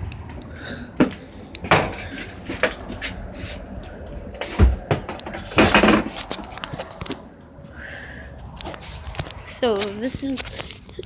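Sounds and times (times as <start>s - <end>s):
heavy thump: 4.4s - 6.2s
sharp knocks: 4.5s - 6.6s.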